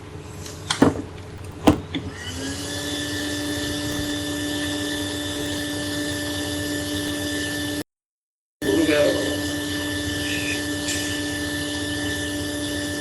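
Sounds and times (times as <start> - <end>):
sharp clicks: 1.2 - 2.0, 3.0 - 6.3, 6.9 - 7.2.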